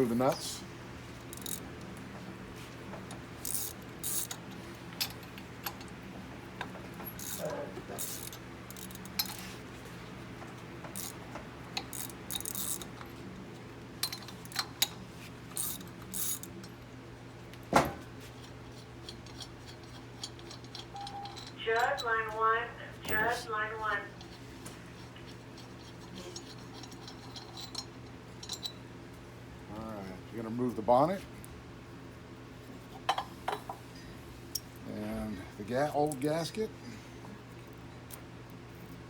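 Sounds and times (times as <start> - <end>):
steady low hum: 0.0 - 39.0
ratchet wrench clicking: 1.3 - 1.6, 3.4 - 4.4, 11.0 - 11.2, 11.8 - 12.9
small metal clinks: 19.0 - 22.3, 25.2 - 28.8.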